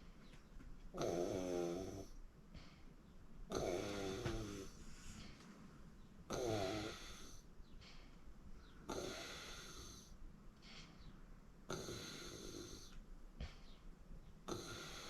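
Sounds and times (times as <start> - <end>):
person snoring: 1.0 - 2.1, 3.5 - 4.8, 6.3 - 7.4, 8.9 - 10.1, 11.7 - 13.0, 14.5 - 15.0
soft breath: 2.5 - 6.1, 6.8 - 15.0.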